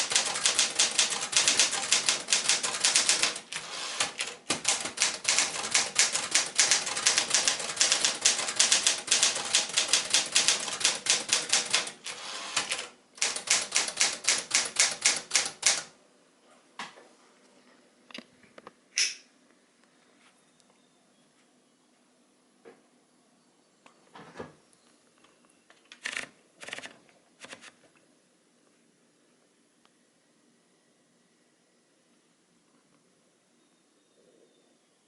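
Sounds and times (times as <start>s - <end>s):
typewriter keystroke clacks: 0.0s - 15.9s, 25.9s - 27.7s.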